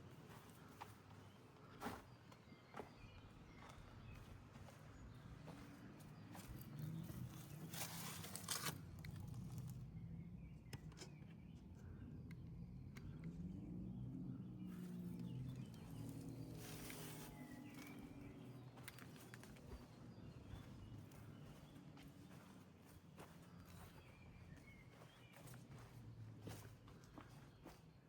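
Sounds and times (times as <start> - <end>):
footsteps on stone path: 15.6 - 28.0.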